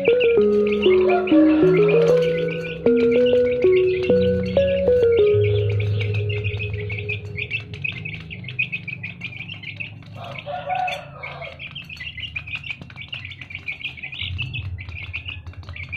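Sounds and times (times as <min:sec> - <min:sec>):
small birds chirping: 0:00.0 - 0:15.9.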